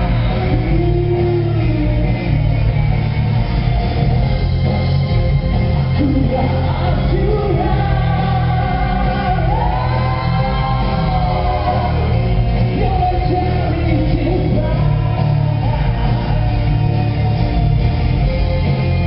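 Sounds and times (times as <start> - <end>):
live rock band playing: 0.0 - 19.0
vocalist singing long notes: 6.0 - 17.0.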